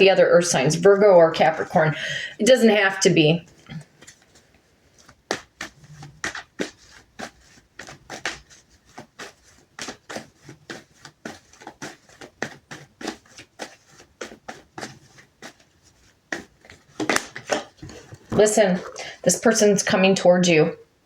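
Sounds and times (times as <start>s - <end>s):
cards being shuffled: 3.4s - 19.1s.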